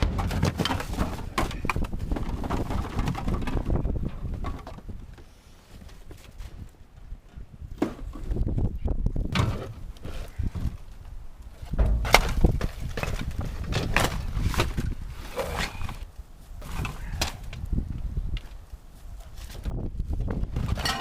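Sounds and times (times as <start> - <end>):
containers knocking and scraping: 0.0 - 5.0, 11.7 - 16.0.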